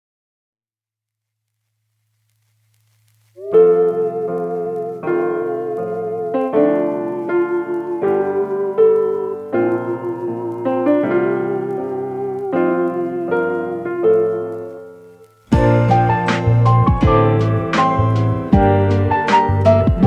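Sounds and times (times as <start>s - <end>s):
piano melody with chords: 3.4s - 20.0s.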